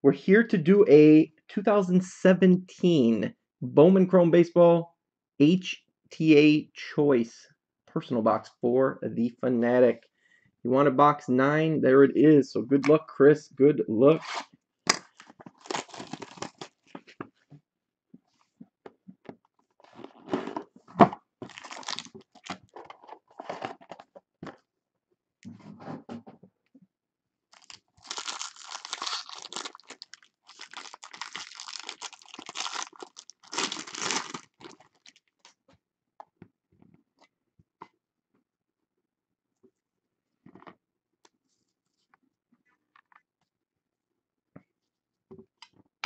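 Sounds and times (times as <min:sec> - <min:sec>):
packaging rustling and clicking: 0:15.0 - 0:17.0, 0:27.6 - 0:35.5
wrap ripping and crinkling: 0:15.5 - 0:16.7, 0:21.5 - 0:22.5, 0:27.5 - 0:35.4.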